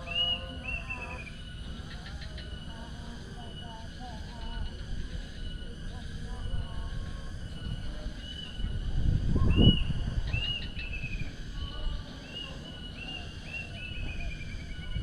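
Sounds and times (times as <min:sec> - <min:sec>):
faint insect whine: 0:00.0 - 0:15.0
small birds chirping: 0:00.0 - 0:15.0.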